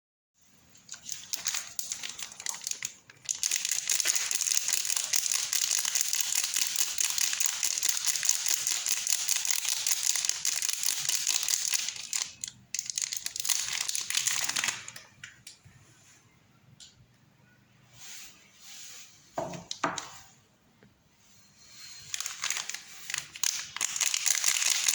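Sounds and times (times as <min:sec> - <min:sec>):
wrapper crinkling: 0:00.7 - 0:15.1, 0:21.8 - 0:24.9.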